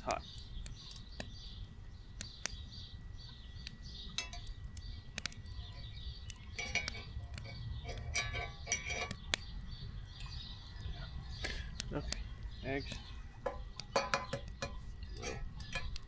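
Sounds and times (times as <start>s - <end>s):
pan and utensils clinking: 6.6s - 9.2s, 13.5s - 15.9s.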